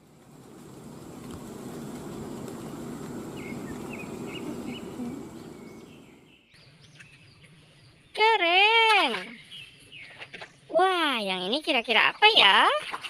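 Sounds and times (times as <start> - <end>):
water sloshing and splashing: 8.8 - 10.7, 12.0 - 13.0.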